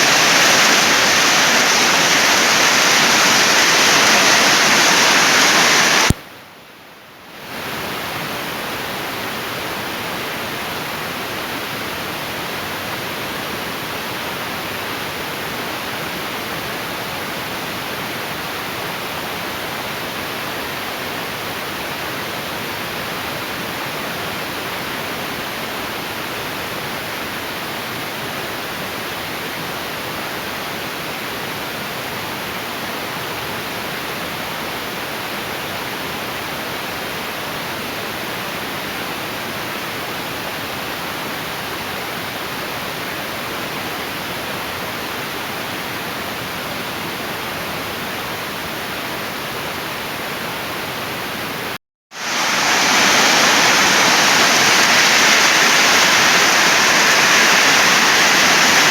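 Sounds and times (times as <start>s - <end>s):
heavy rain pouring: 0.0s - 6.2s, 52.1s - 58.9s.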